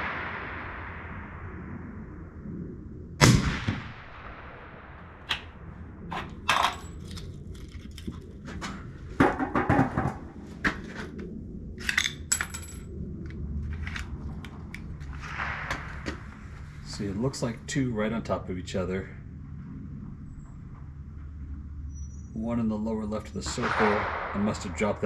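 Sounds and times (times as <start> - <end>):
rifle shot: 3.2 - 6.6, 15.1 - 16.8, 23.5 - 25.0.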